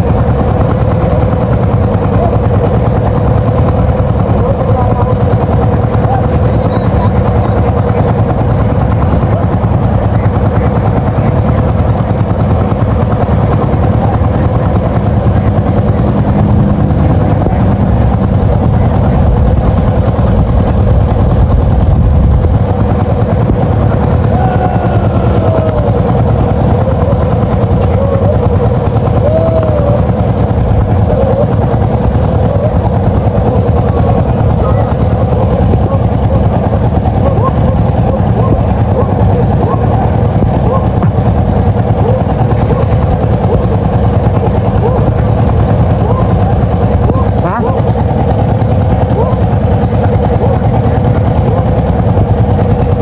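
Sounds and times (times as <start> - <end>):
engine running with whine: 0.0 - 53.0
rising and falling calls: 24.3 - 30.2.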